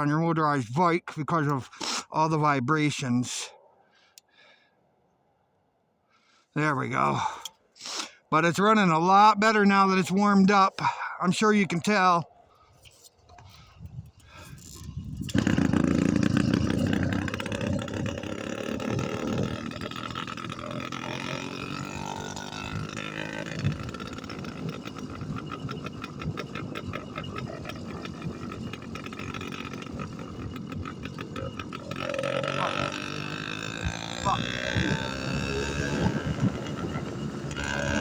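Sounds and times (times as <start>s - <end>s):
two-stroke engine rattling: 14.0s - 38.0s.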